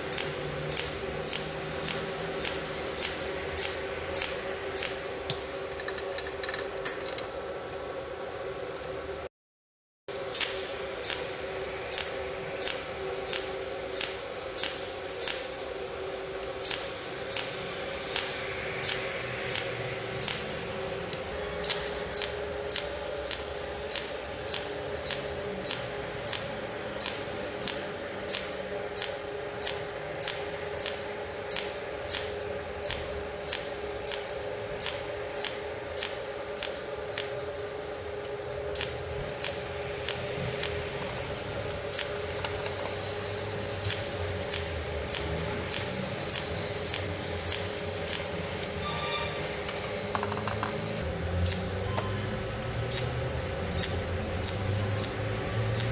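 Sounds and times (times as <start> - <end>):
welding pulse clicks: 0.0 - 7.3, 10.2 - 15.7, 16.4 - 55.9
welding machine hum: 0.0 - 8.4, 10.1 - 55.9.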